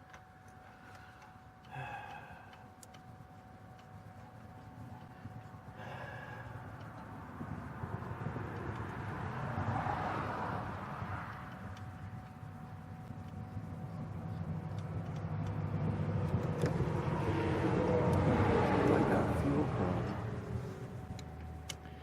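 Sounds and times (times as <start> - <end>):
steady low rumble: 0.0 - 22.0
vehicle passing by: 6.4 - 12.4, 13.1 - 21.2.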